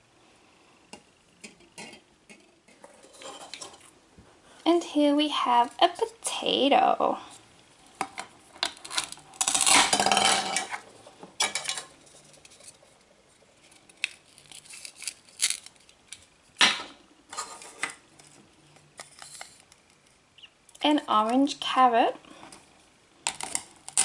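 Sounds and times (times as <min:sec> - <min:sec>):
velcro tearing: 0:14.0 - 0:15.9.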